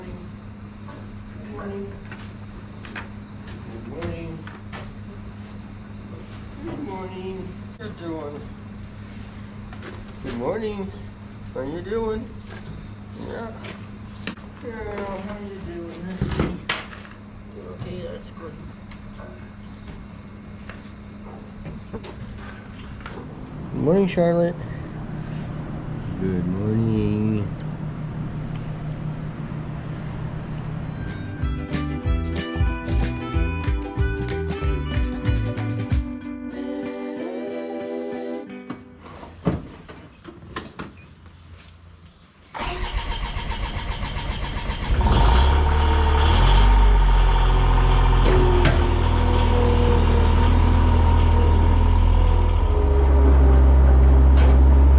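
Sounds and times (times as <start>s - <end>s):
low mechanical hum: 0.0s - 54.9s
engine starting and running: 42.5s - 54.9s.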